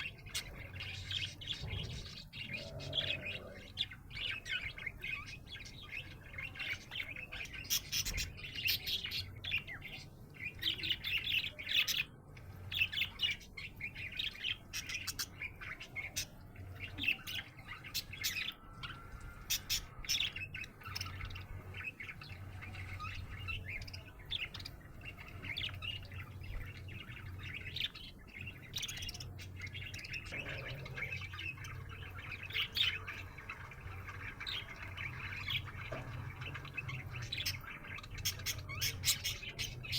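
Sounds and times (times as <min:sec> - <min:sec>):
faint low hum: 0:00.0 - 0:39.9
budgerigar chirping and warbling: 0:27.2 - 0:39.9.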